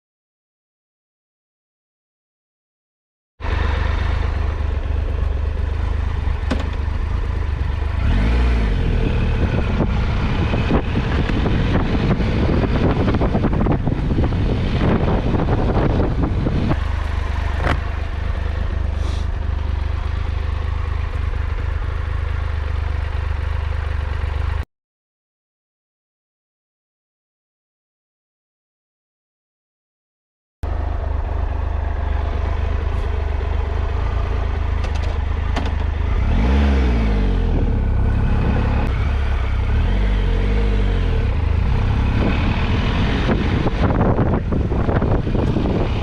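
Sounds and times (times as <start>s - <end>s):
motorcycle engine revving: 3.4s - 24.6s, 31.0s - 46.0s.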